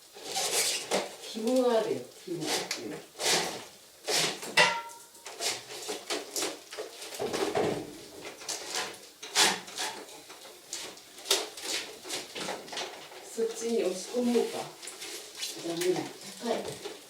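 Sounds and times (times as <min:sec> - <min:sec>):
knocks clunks and rustles: 0:06.2 - 0:10.4.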